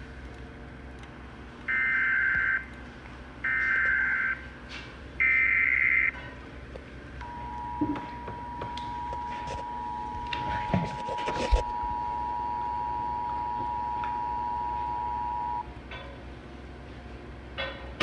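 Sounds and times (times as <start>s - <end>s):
two-tone attention signal: 7.2s - 10.6s, 11.7s - 15.6s.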